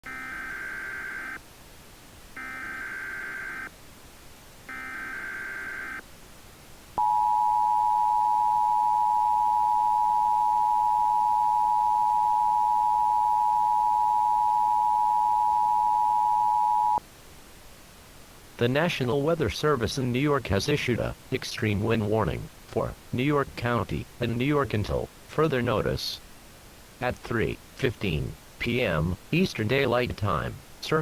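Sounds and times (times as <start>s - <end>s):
two-tone attention signal: 7.0s - 17.0s.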